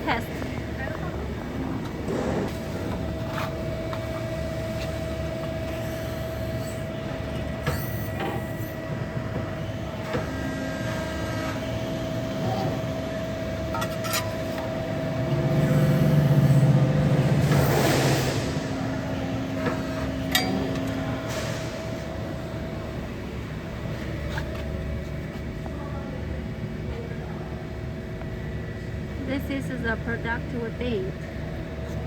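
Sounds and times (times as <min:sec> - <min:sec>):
hydraulic pump humming: 0:00.0 - 0:25.3.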